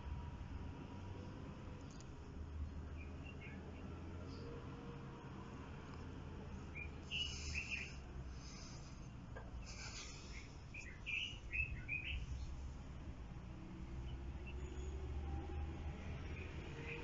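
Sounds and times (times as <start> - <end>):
wild birds chirping: 2.8 - 4.8, 6.6 - 17.0.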